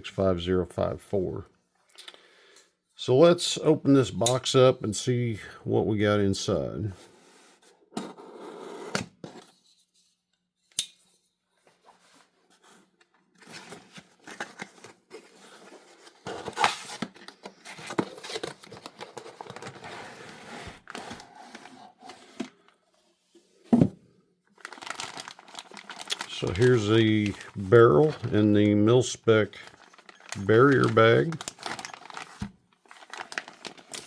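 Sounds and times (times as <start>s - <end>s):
tape and cardboard rustling: 11.6s - 22.7s, 29.6s - 34.0s.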